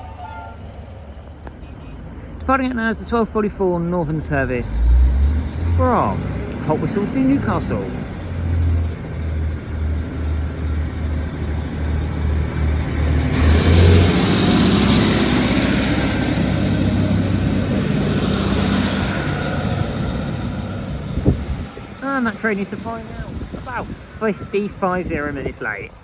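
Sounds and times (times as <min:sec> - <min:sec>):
diesel train engine pulsing: 0:00.0 - 0:26.0
train whine: 0:04.8 - 0:24.8.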